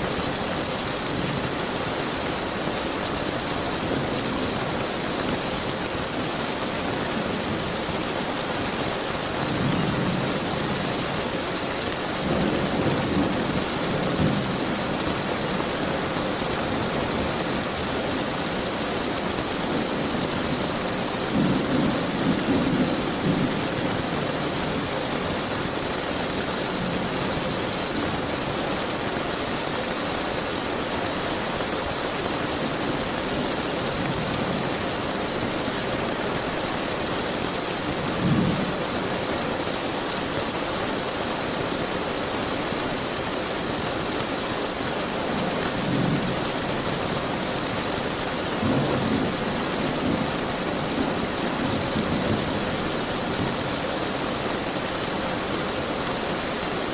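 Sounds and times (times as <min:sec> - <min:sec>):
heavy rain: 0:00.0 - 0:56.9.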